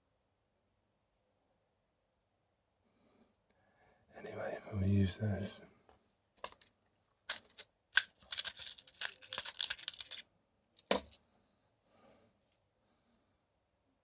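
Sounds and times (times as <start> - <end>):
plastic packet crinkling: 7.3 - 10.2
object knocked down on bench: 10.9 - 11.1.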